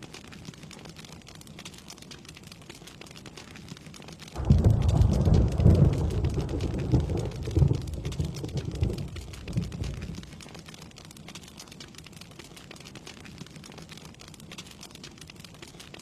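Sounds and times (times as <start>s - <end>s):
rain falling: 0.0s - 16.0s
thunder crack and rumble: 4.4s - 10.5s.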